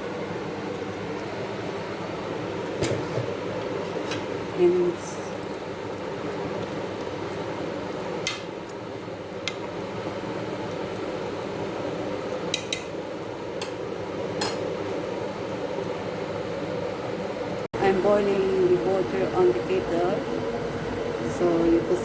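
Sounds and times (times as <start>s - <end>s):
utensil clinking against a pot: 14.4s - 14.7s.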